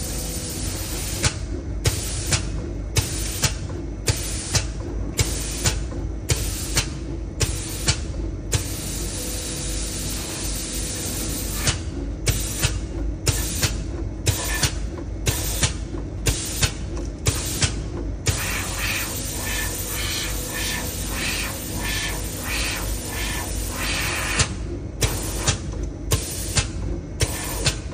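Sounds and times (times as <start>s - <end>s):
steady low machine hum: 0.0s - 27.9s.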